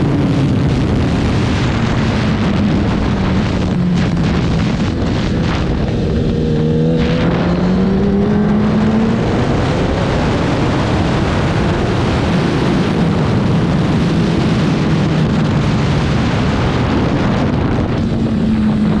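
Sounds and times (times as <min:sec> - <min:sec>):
motorcycle engine accelerating: 0:00.0 - 0:19.0
wind rush on microphone: 0:00.0 - 0:19.0.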